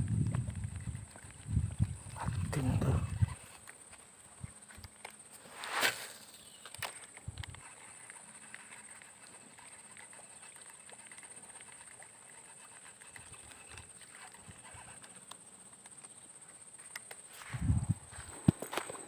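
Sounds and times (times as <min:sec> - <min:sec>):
insects droning: 0:00.0 - 0:19.0
faint clicks: 0:06.5 - 0:17.3.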